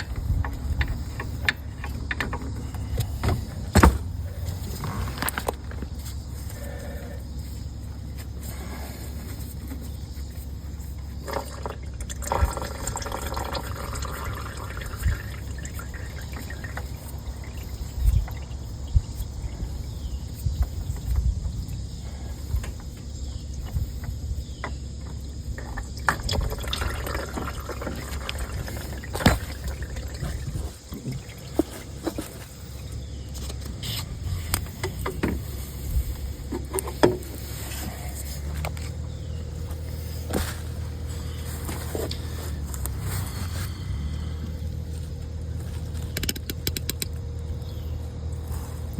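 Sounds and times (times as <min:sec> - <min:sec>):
knocks and clanks of tools: 0:00.0 - 0:04.2
oil trickling into a drain pan: 0:11.2 - 0:19.0, 0:25.6 - 0:32.3.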